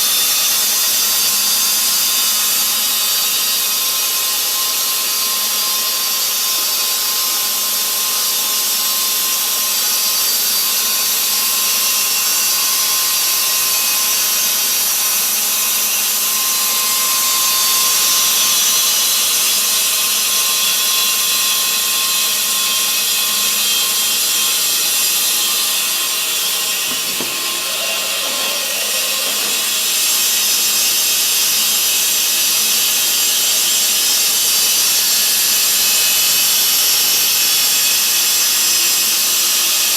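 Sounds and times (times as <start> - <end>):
band saw cutting wood: 10.2 - 37.9.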